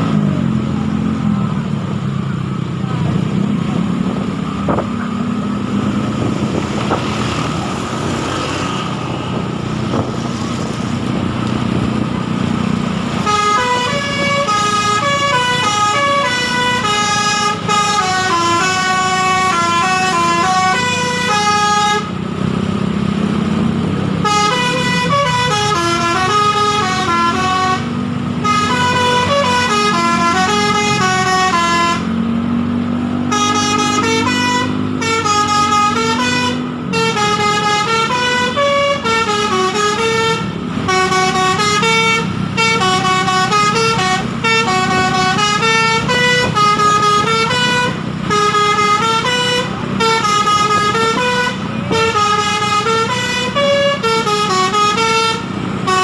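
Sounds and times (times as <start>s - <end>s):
bus engine running: 0.0s - 56.0s
multi-tone bus horn playing a tune: 13.0s - 22.3s, 24.0s - 32.3s, 33.2s - 56.0s.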